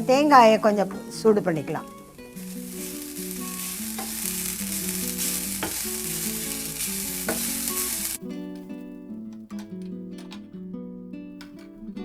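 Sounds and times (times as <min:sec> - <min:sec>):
coconut sizzling in a frying pan: 0:00.0 - 0:08.6
spatula tapping on pan: 0:02.9 - 0:08.0.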